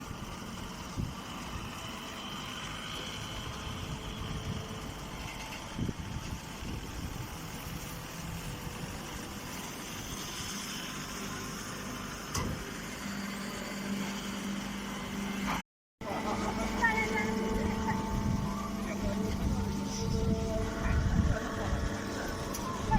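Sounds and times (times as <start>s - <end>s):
baling machine engine running: 0.0s - 22.9s
steady hum: 12.8s - 22.9s.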